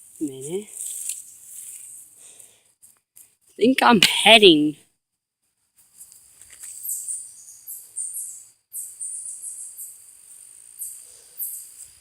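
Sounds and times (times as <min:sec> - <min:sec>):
crickets chirping: 0:05.9 - 0:12.0.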